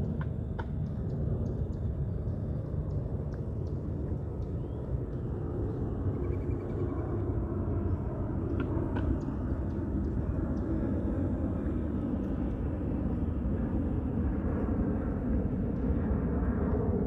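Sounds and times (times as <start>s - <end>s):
jet engines low rumble: 0.0s - 17.0s.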